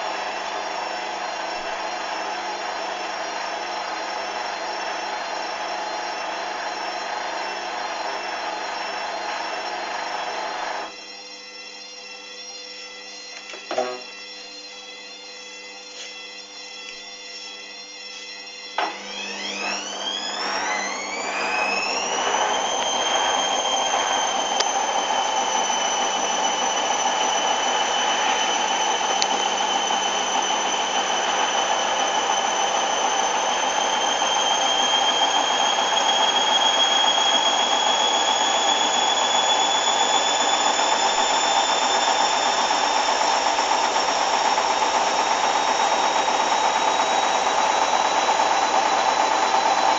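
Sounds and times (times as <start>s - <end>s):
washing machine motor whine: 0.0s - 49.9s
washing machine hum: 18.8s - 49.9s.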